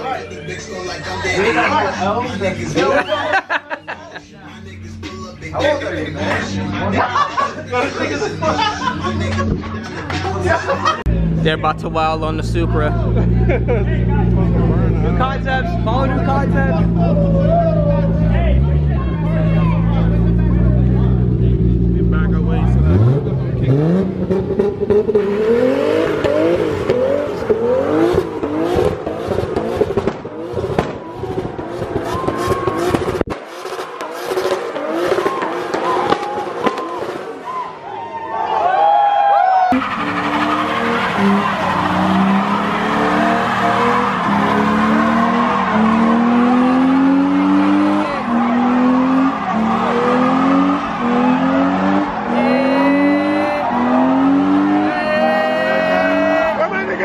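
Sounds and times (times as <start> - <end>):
car engine revving: 4.5 - 37.5, 39.7 - 57.0
tyres spinning and squealing: 12.3 - 57.0.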